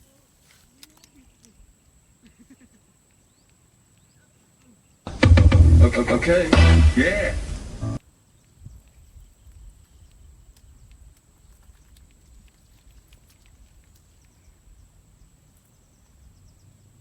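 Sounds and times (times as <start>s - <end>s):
light clicks and taps: 0.5s - 1.6s
low rumble: 5.1s - 8.0s.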